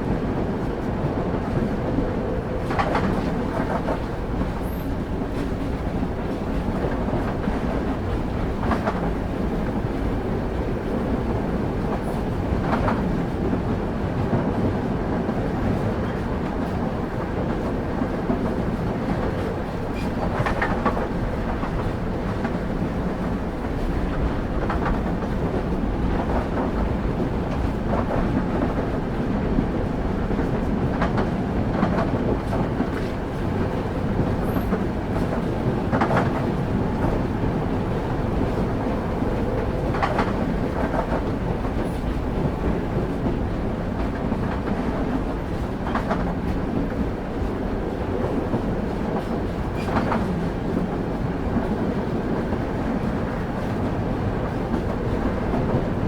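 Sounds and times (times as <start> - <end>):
rail joint clicks: 0.0 - 56.0
train wheels rumbling on rails: 0.0 - 56.0.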